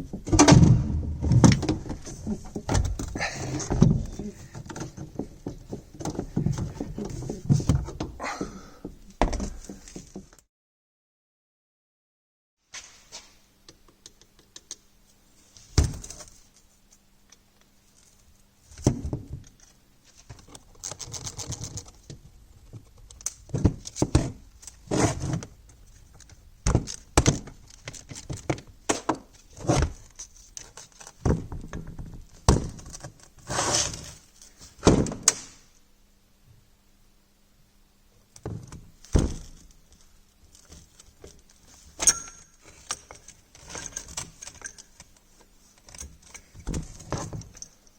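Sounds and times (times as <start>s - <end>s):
faint steady hum: 12.8s - 47.9s
metal tools knocking and clinking: 42.0s - 44.9s.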